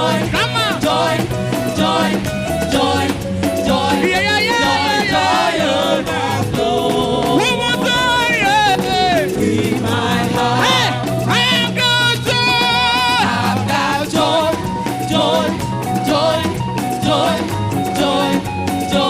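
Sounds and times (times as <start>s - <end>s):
voices singing over a band: 0.0s - 19.0s.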